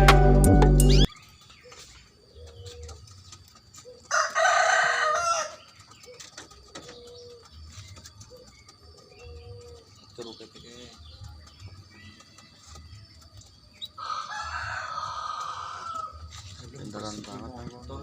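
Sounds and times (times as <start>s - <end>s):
rooster crowing: 4.0s - 5.7s, 14.0s - 16.3s.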